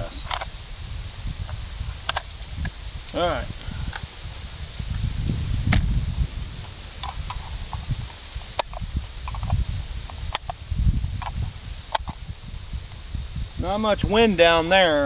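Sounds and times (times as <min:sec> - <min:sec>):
insects chirping: 0:00.0 - 0:15.0
rifle handling clicks and knocks: 0:00.2 - 0:00.6, 0:01.5 - 0:03.2, 0:06.6 - 0:07.8, 0:08.6 - 0:10.6.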